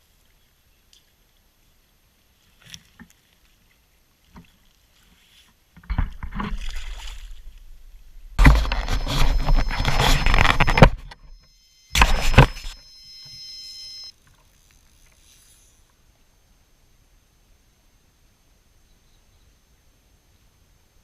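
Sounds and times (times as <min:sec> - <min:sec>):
water splashing and sloshing: 0:04.3 - 0:08.6.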